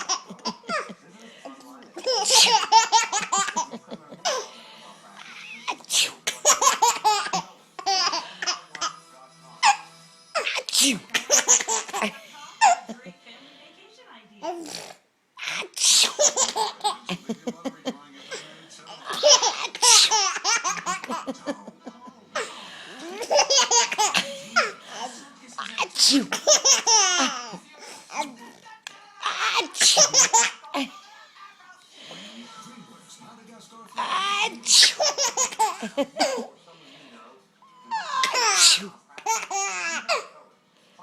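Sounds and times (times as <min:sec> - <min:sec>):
baby laughing: 0:00.0 - 0:01.0, 0:02.0 - 0:04.5, 0:05.2 - 0:09.0, 0:10.4 - 0:13.0, 0:15.4 - 0:17.2, 0:18.9 - 0:21.6, 0:22.4 - 0:28.3, 0:29.2 - 0:30.7, 0:34.0 - 0:36.5, 0:37.8 - 0:40.2.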